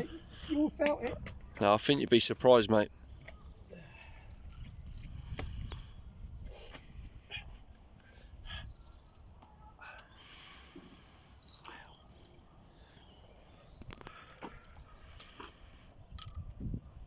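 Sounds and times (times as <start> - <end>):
faint high bird chirps: 2.7 - 5.4, 7.3 - 15.1.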